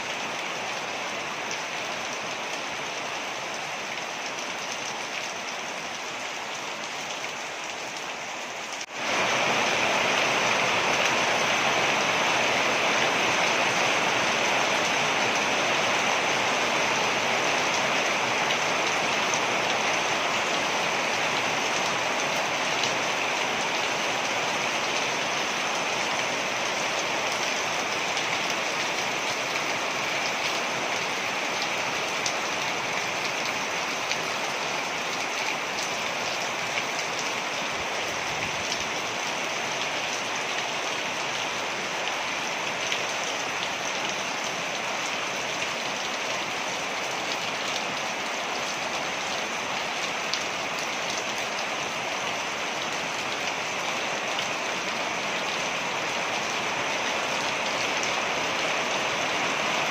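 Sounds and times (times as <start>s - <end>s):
waterfall rushing: 8.5s - 13.5s.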